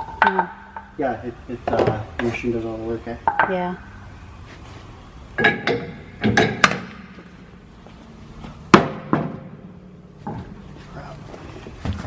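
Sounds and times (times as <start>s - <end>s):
metal clanks and knocks from wheel: 5.4s - 7.4s, 8.7s - 10.6s.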